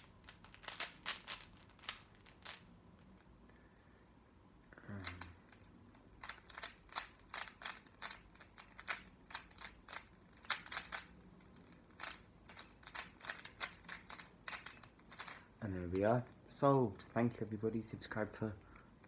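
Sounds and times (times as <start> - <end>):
plastic puzzle cube clicking: 0.0 - 2.7, 5.0 - 15.4.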